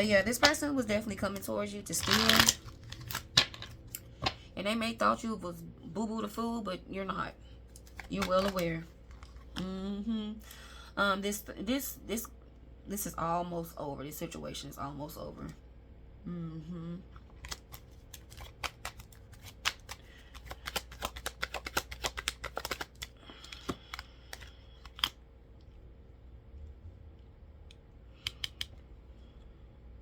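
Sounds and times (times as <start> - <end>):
cards shuffling clicks: 1.9 - 4.4, 7.7 - 9.6, 17.3 - 25.2.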